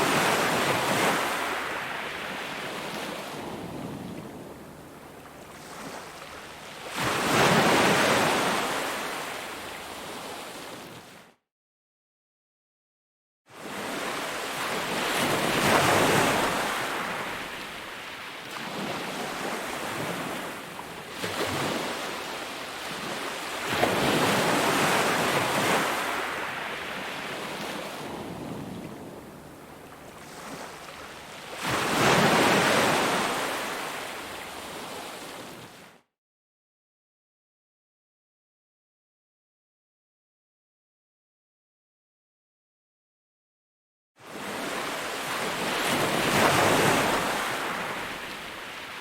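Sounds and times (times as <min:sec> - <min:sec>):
ocean waves breaking: 0:00.0 - 0:11.0, 0:13.6 - 0:35.8, 0:44.3 - 0:49.0.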